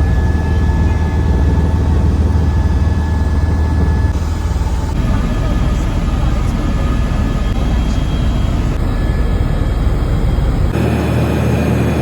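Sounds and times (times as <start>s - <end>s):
helicopter rotor and turbine rumble: 0.0s - 12.0s.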